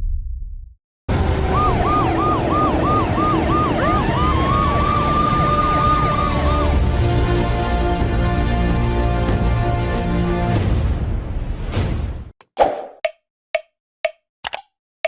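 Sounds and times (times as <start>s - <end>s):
emergency siren cycling quickly: 1.5s - 5.1s.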